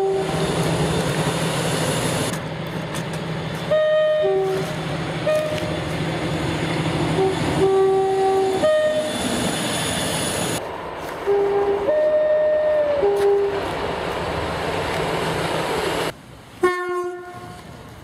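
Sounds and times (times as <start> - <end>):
two-tone train horn: 0.0 - 0.4, 3.7 - 5.8, 7.1 - 9.2, 11.2 - 13.6, 16.6 - 17.6
train rumble: 0.0 - 18.0.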